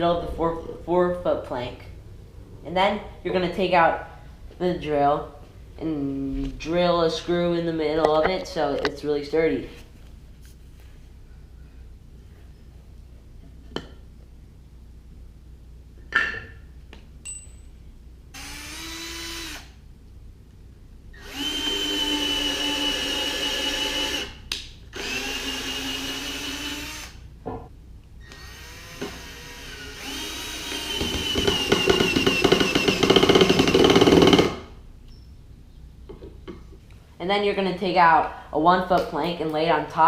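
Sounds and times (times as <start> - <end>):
power drill whining: 18.4 - 19.8, 21.2 - 27.2, 28.2 - 34.5.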